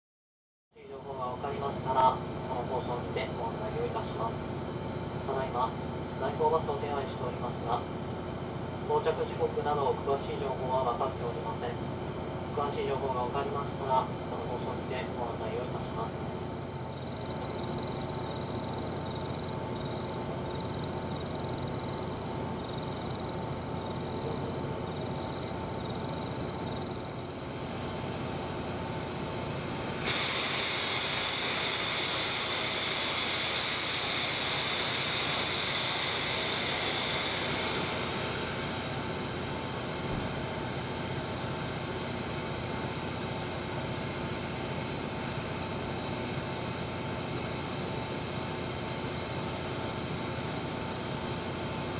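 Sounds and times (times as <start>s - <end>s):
steam locomotive hissing: 16.9s - 51.9s.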